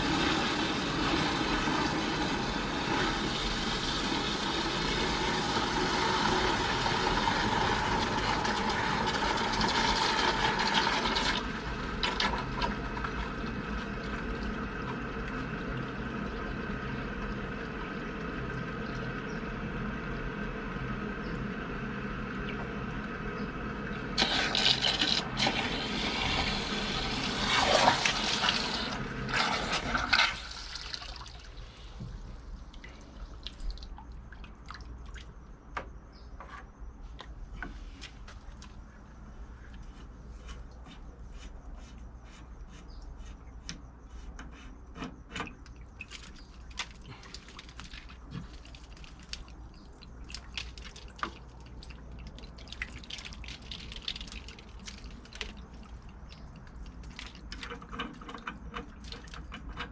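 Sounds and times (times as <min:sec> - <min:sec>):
low motor hum: 0:00.0 - 0:29.9
water running and splashing: 0:24.2 - 0:35.2, 0:45.9 - 0:59.8.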